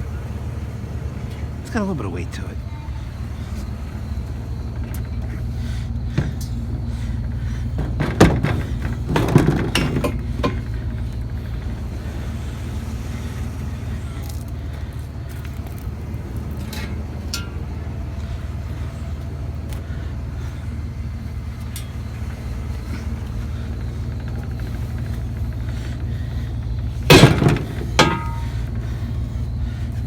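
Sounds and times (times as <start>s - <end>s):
vehicle engine idling: 0.0s - 30.0s
metal knocks and clatter: 6.1s - 11.8s, 23.6s - 28.9s.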